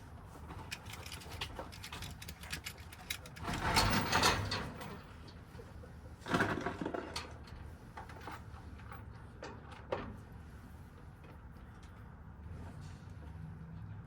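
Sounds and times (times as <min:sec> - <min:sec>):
lock parts scraping and rattling: 0:00.4 - 0:05.1.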